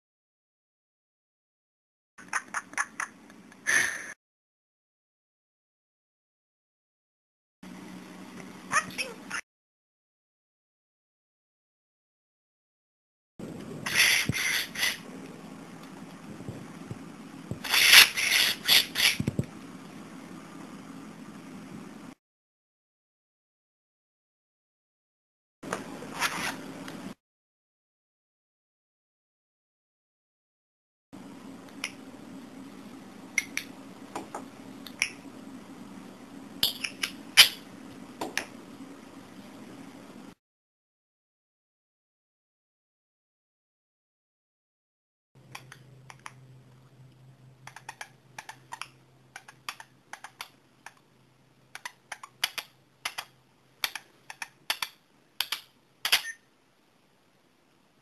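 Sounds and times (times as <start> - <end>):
steady low hum: 13.4 - 22.2, 31.2 - 40.4
budgerigar clicks and chirps: 47.7 - 51.0.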